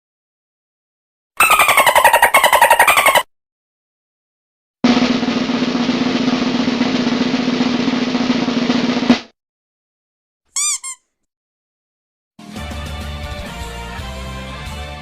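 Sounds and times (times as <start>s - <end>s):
snare drum roll: 4.8s - 9.4s.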